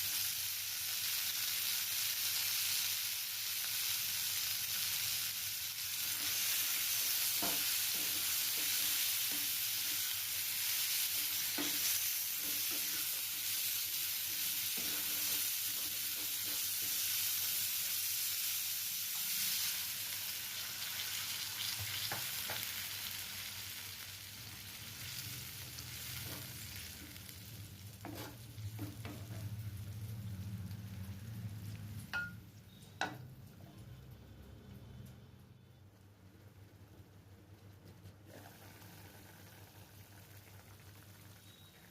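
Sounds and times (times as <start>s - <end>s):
chutney sizzling in a pan: 0.0s - 33.3s, 38.5s - 41.9s
utensil stirring and knocking pan: 6.1s - 10.1s, 11.1s - 13.4s, 28.0s - 29.6s.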